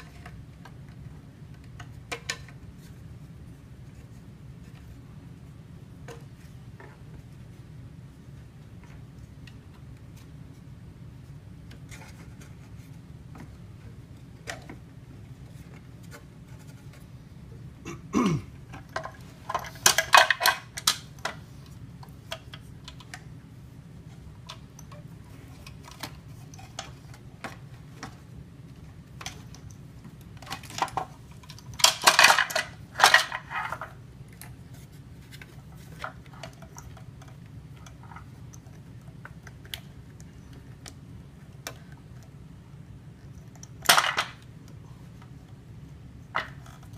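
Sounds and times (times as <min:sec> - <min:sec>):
steady low hum: 0:00.0 - 0:46.9
small parts clattering: 0:18.7 - 0:23.2, 0:29.1 - 0:34.6, 0:43.3 - 0:45.3.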